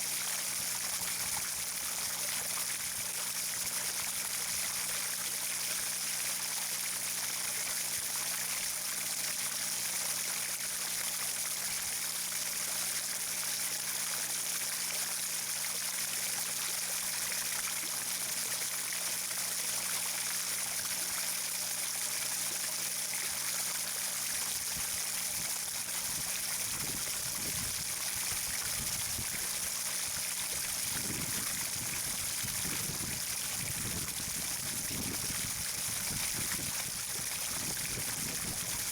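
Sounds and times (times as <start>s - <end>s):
running water: 0.0s - 38.9s.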